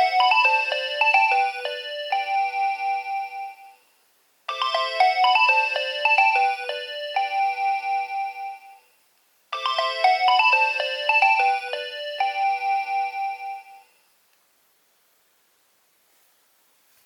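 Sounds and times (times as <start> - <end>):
phone ringtone beeping melody: 0.0 - 3.8, 4.5 - 8.9, 9.6 - 14.0.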